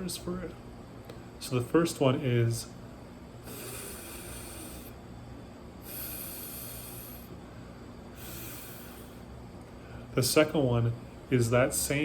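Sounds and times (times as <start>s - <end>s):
man hissing th sound: 3.4s - 5.0s, 5.8s - 7.4s, 8.2s - 9.2s.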